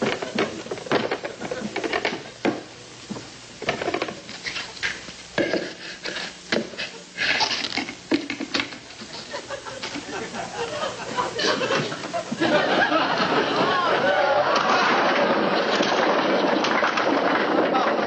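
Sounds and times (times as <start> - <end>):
pots and pans clattering: 5.4 - 9.3, 14.4 - 18.0.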